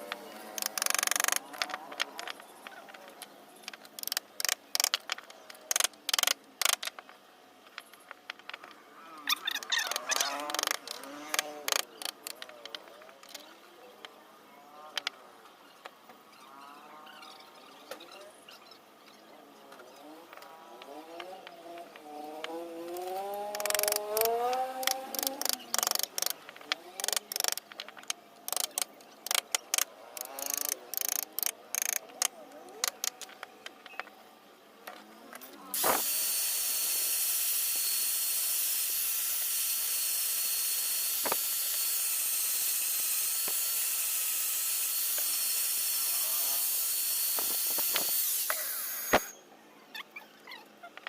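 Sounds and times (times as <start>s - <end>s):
small power tool whining: 9.3s - 13.5s, 20.3s - 33.4s, 35.4s - 49.4s
sharp taps and clicks: 21.2s - 34.1s.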